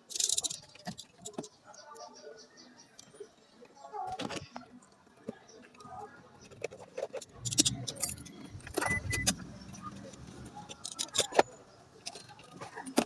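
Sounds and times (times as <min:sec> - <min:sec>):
metallic jingling and clicking of parts: 0:00.0 - 0:01.6, 0:06.4 - 0:13.0.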